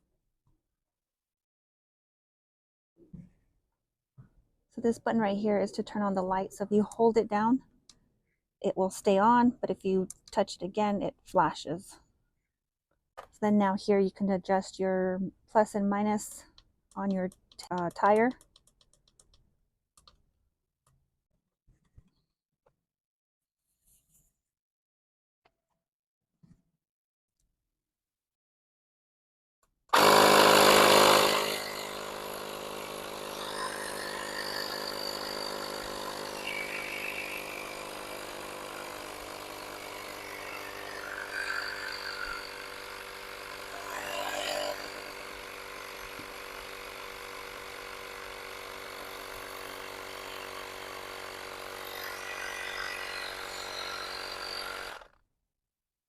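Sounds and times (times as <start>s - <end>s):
tire inflator compressor running: 30.0s - 52.3s, 53.8s - 55.2s.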